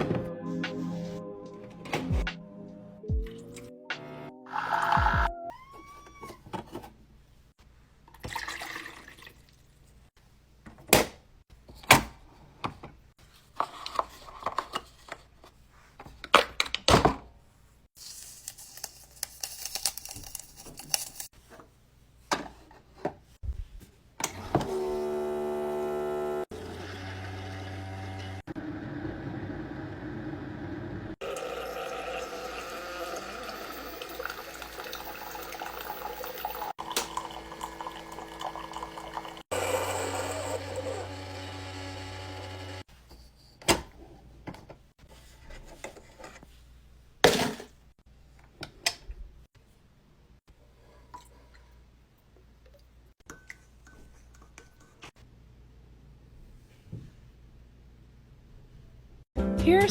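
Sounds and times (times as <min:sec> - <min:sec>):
liquid running into cup: 0:08.2 - 0:09.6, 0:31.2 - 0:41.0
coffee maker buzzing hum: 0:24.4 - 0:42.9.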